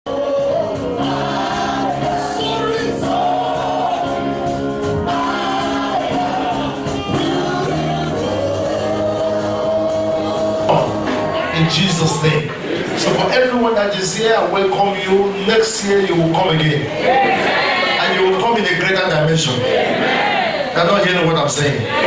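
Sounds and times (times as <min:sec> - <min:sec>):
choir singing gospel: 0:00.0 - 0:22.0
steady beat: 0:00.1 - 0:12.7.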